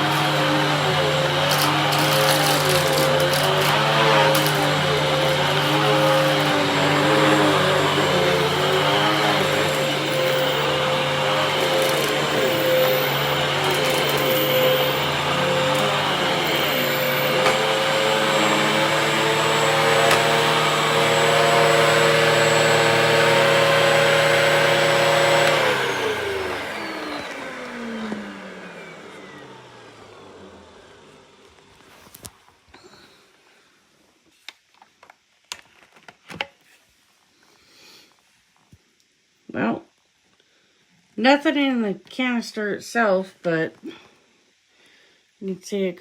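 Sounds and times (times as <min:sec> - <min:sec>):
vacuum motor winding down: 0:00.0 - 0:31.5
vacuum cleaner motor running: 0:00.0 - 0:33.0.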